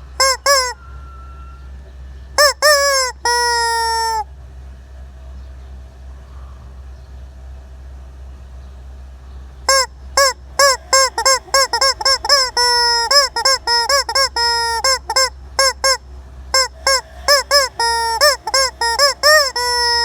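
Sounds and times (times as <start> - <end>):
chicken cackling: 0.0 - 4.3, 9.7 - 20.0.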